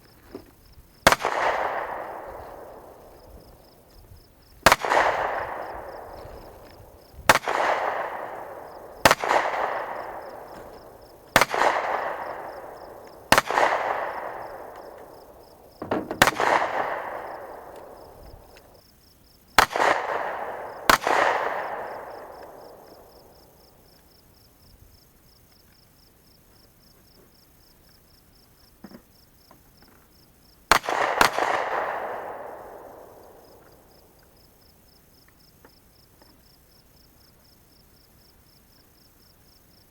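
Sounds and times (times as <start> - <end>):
rolling echo: 0.2 - 18.8, 19.6 - 23.8, 30.7 - 34.4
gunshots: 1.0 - 4.0, 4.6 - 18.6, 19.6 - 23.2, 30.7 - 33.6.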